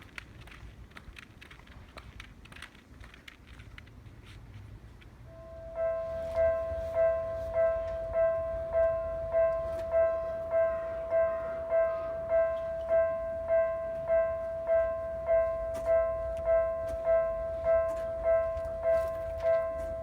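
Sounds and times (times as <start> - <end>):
level crossing alarm dinging: 5.3 - 20.0.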